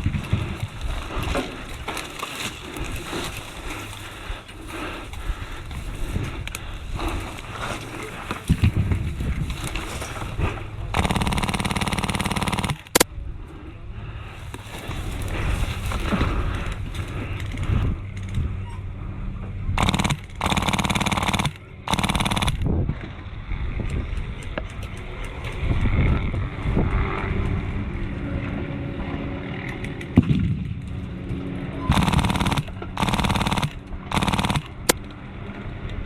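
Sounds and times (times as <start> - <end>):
rustling movement: 0.0 - 13.0, 14.1 - 18.6
airsoft gun firing bursts: 10.9 - 13.0, 19.8 - 22.7, 31.9 - 35.0.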